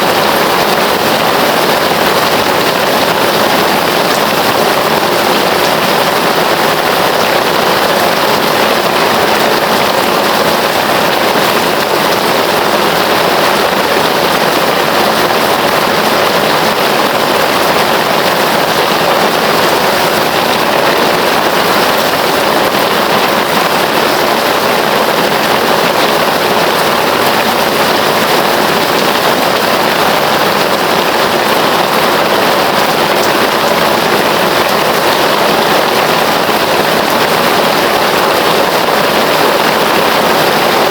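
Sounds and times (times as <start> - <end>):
heavy rain falling: 0.0 - 40.9.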